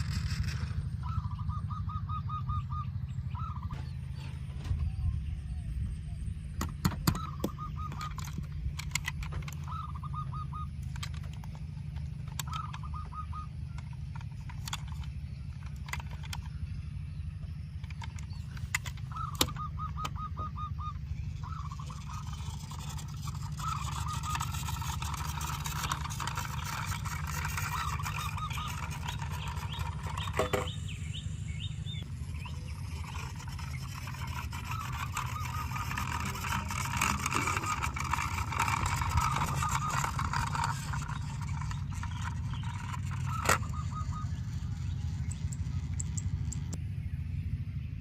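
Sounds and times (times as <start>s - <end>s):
poultry rattling calls: 0.0s - 5.1s, 6.4s - 46.8s
steady low hum: 0.0s - 48.0s
scattered clicks: 6.6s - 10.1s, 10.7s - 16.8s, 17.7s - 20.2s, 21.5s - 30.7s, 32.5s - 46.8s.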